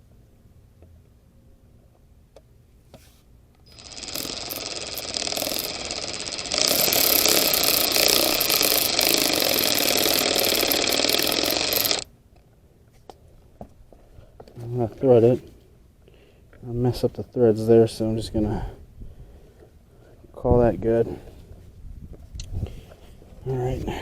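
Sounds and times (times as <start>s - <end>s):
power driver driving screw: 3.7s - 12.0s.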